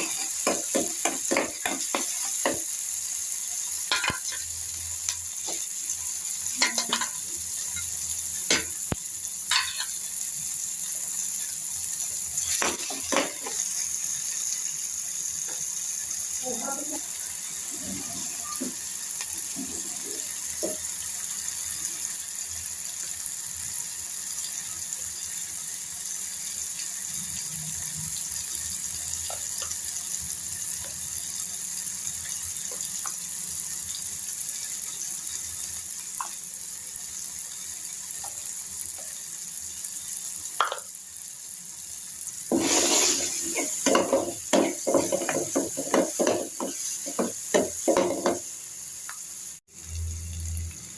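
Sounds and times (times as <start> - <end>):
pot simmering and sizzling: 0.0 - 50.9
spoon knocking on pot: 0.1 - 2.7, 43.6 - 48.4.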